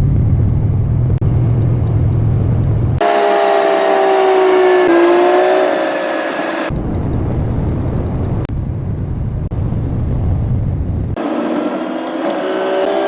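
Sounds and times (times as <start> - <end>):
engine droning: 0.0 - 6.8, 11.1 - 13.0
low road rumble: 0.0 - 13.0.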